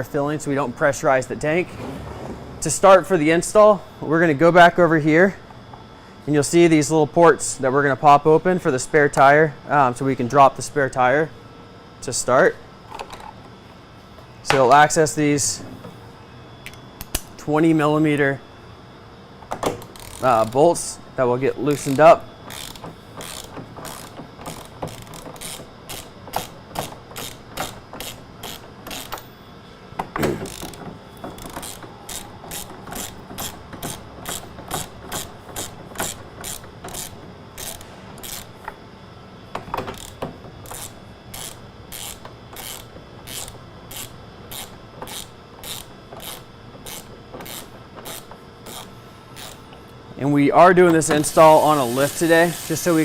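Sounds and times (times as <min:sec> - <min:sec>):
loud clunk: 0:01.6 - 0:03.2, 0:30.1 - 0:30.5
ratchet wrench clicking: 0:19.9 - 0:20.6, 0:22.5 - 0:29.2, 0:30.4 - 0:30.8, 0:31.4 - 0:38.5, 0:39.9 - 0:49.6.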